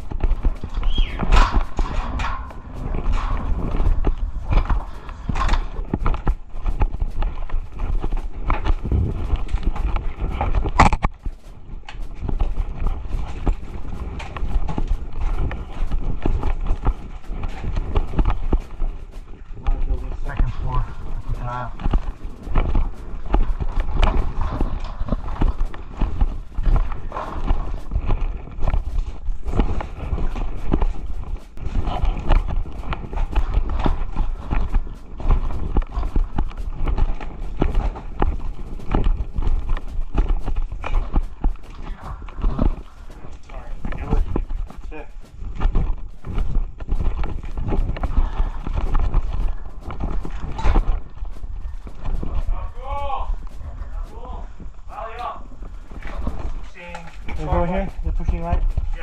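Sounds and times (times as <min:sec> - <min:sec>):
footsteps on ground: 0:00.0 - 0:59.0
steady low rumble: 0:00.0 - 0:59.0.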